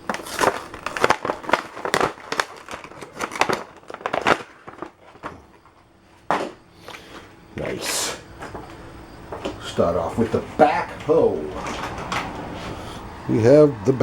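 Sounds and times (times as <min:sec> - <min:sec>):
toy packaging crinkling: 0:00.0 - 0:05.3.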